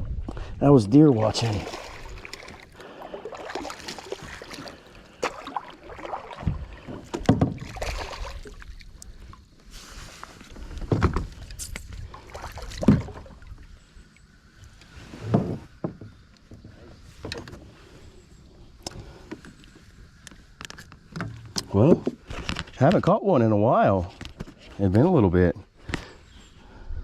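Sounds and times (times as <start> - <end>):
paddle swishing through water: 1.1 - 18.2
paddle knocks: 6.3 - 7.9.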